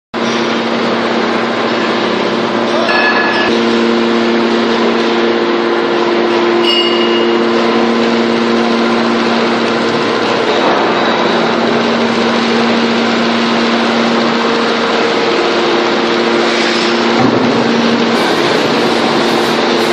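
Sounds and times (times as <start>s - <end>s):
baler machine hum: 0.2s - 19.9s.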